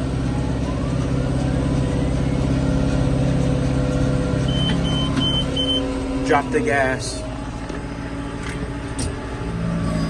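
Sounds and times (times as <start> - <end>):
tractor engine running: 0.0 - 10.0.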